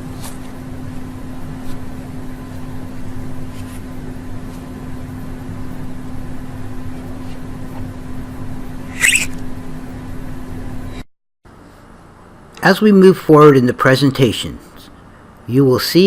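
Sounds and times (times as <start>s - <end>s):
steady low hum: 0.0s - 16.0s
faint short high sounds: 8.9s - 9.4s.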